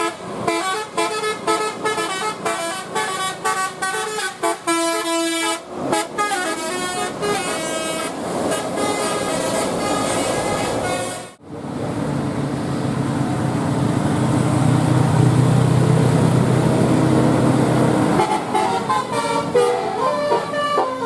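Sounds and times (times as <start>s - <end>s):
multi-tone horn melody: 0.0s - 11.4s, 18.1s - 21.0s
bus engine droning: 0.0s - 21.0s.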